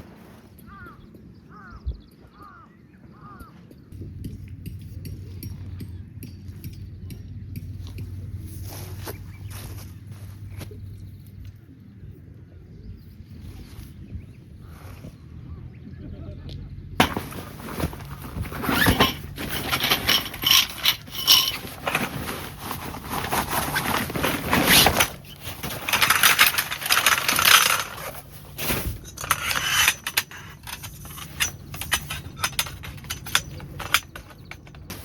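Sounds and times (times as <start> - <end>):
scraping and rustling: 8.3 - 10.9, 17.0 - 35.0
metallic clinks and rattles: 17.0 - 35.0.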